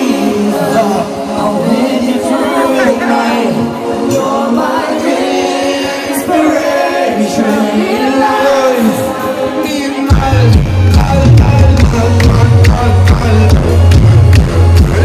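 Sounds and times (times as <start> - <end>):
person singing: 0.0 - 15.0
synth chords: 0.0 - 15.0
heavy bass line and beat: 10.1 - 15.0.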